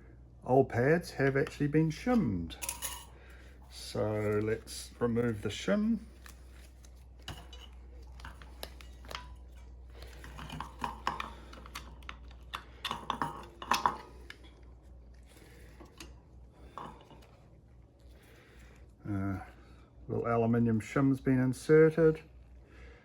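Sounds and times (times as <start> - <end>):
small metal parts clinking: 2.6 - 3.2.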